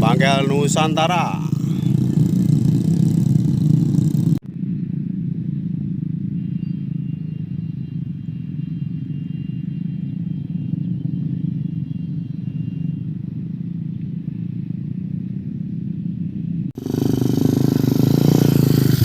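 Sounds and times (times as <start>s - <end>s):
engine running steadily: 0.0s - 19.0s
loud harsh engine with hiss: 16.8s - 19.0s.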